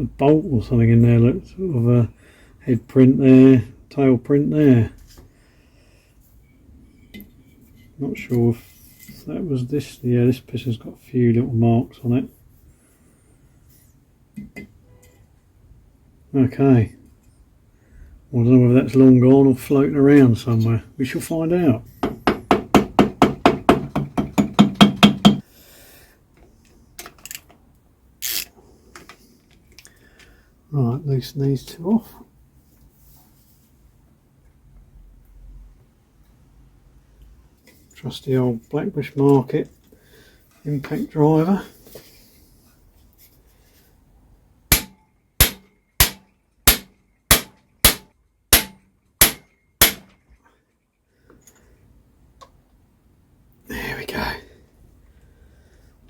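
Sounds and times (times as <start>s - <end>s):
rapid hammer blows: 44.7s - 50.2s.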